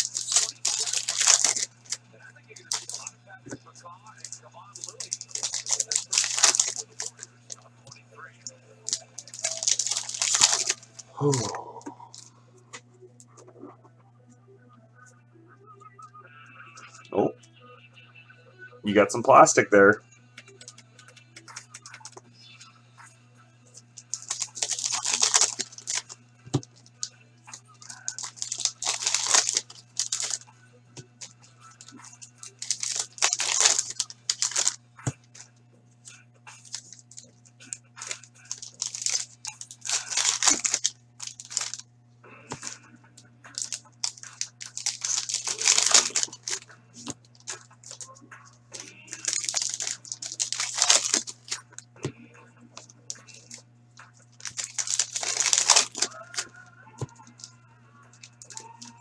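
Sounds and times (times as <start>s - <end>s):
foil wrappers tearing and crinkling: 0.0s - 12.3s, 24.0s - 35.5s, 36.6s - 41.8s, 43.5s - 51.8s, 52.8s - 53.6s, 54.3s - 57.5s, 58.2s - 59.0s.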